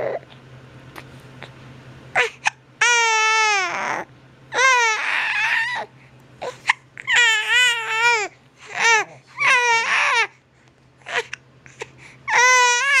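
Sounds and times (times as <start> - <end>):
baby crying: 2.2 - 10.3, 11.1 - 11.4, 12.3 - 13.0.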